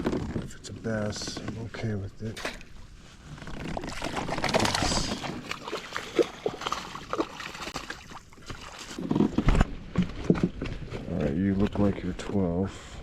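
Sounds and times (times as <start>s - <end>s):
water splashing beside kayak: 3.6s - 9.3s.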